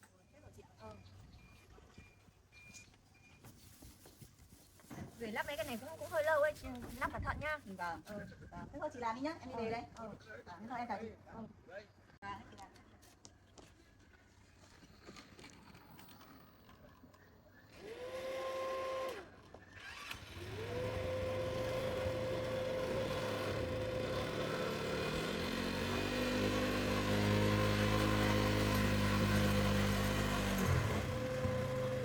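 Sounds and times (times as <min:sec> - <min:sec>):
small electric motor whining: 0:16.0 - 0:32.0.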